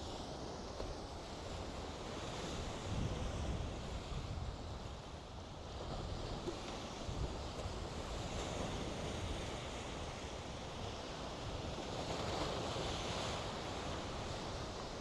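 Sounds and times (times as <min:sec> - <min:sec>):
sea waves washing ashore: 0:00.0 - 0:15.0
wind rumbling on microphone: 0:01.0 - 0:05.2.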